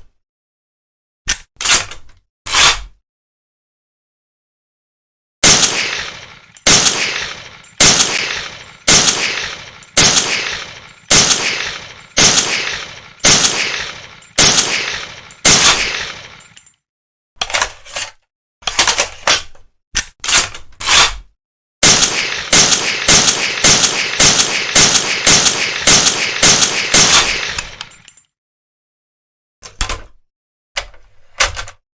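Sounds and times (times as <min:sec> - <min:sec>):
rapid rifle fire: 0:05.4 - 0:16.6, 0:21.8 - 0:28.2
rifle shots echoing: 0:05.4 - 0:16.6, 0:21.8 - 0:28.0.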